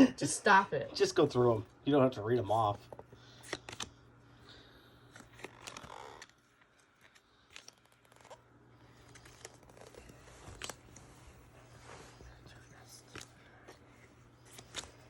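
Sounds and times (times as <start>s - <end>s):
trading cards flipping: 2.9s - 4.0s, 5.0s - 11.4s, 12.8s - 15.0s.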